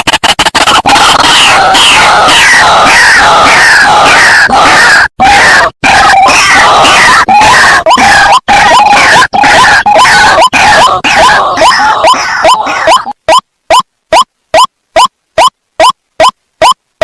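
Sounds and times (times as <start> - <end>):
waterhen calling harshly: 0.5 - 16.8.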